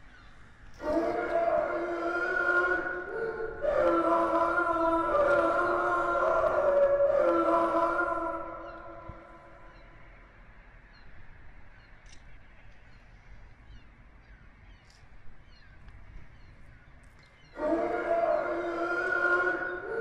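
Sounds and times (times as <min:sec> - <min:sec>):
loud drone chord: 0:00.8 - 0:09.6, 0:17.6 - 0:20.0.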